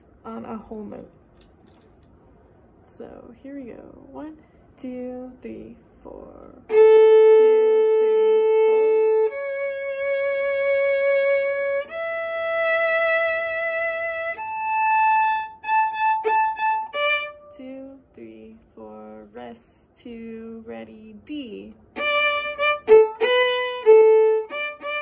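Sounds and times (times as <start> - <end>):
solo violin bowing: 6.7 - 17.5, 22.0 - 25.0.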